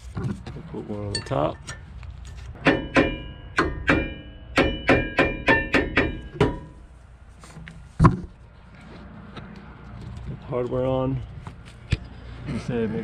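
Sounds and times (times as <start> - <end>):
sharp metal taps ringing: 2.6 - 6.9.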